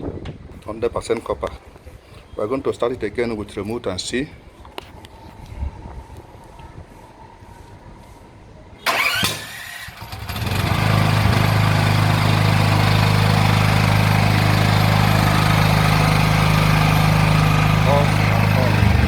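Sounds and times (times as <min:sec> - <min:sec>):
generator engine running: 0:08.8 - 0:19.0
generator starter cranking: 0:08.8 - 0:19.0.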